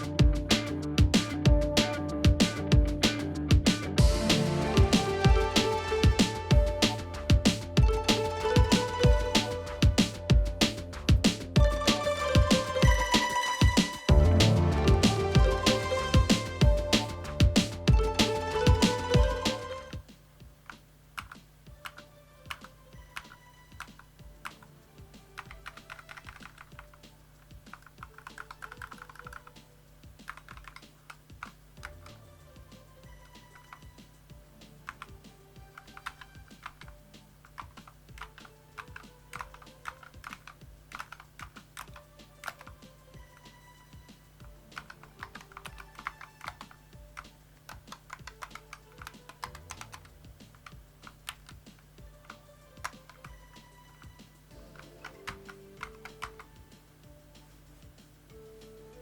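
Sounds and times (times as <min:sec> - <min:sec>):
faint background music: 0:00.0 - 0:59.0
keyboard keystroke clicks: 0:27.7 - 0:29.6, 0:54.0 - 0:56.5
keyboard key clicks: 0:54.7 - 0:56.5.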